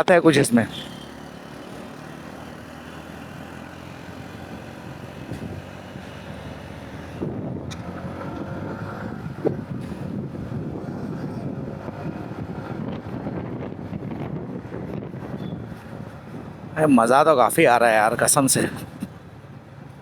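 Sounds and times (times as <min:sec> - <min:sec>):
wind noise on microphone: 0:04.1 - 0:17.2.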